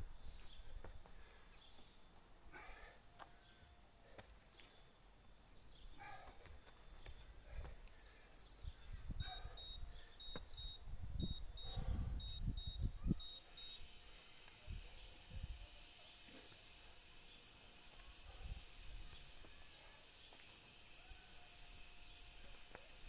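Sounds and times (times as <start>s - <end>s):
faint chirps: 8.0s - 23.0s
high electronic beeps in pairs: 9.2s - 13.8s.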